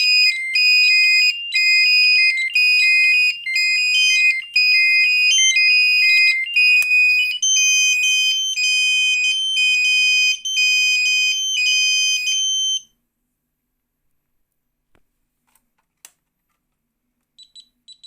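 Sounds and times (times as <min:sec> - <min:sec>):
fire alarm beeping: 0:00.0 - 0:12.9.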